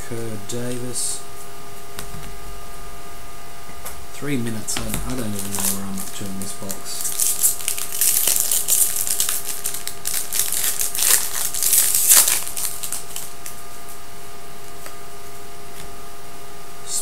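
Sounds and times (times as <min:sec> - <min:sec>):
steady background hum: 0:00.0 - 0:17.0
cards being handled: 0:04.7 - 0:14.0
foil wrappers crinkling: 0:04.8 - 0:14.0.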